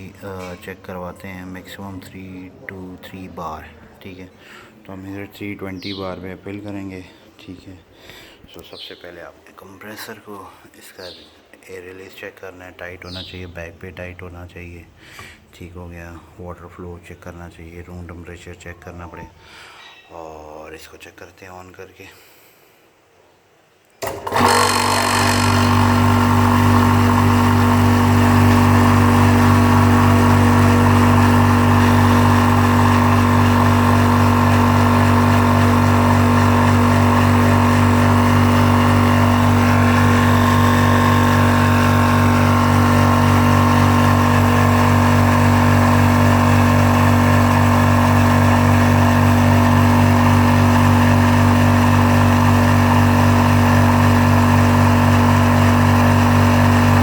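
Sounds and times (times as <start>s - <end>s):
air compressor humming: 0.0s - 0.5s, 24.0s - 57.0s.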